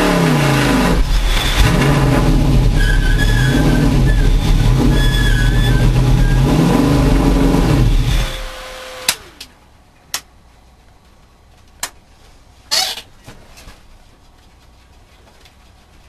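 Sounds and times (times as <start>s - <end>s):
car engine revving: 0.0s - 9.5s
whine: 0.0s - 9.6s.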